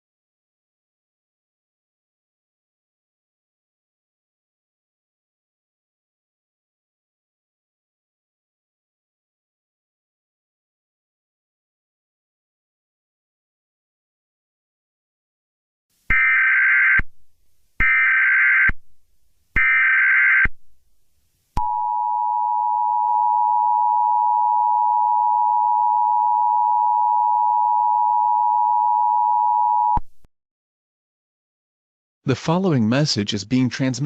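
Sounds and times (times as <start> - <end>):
screechy modem-like data bursts: 16.1 - 17.1, 17.8 - 18.8, 19.6 - 20.5.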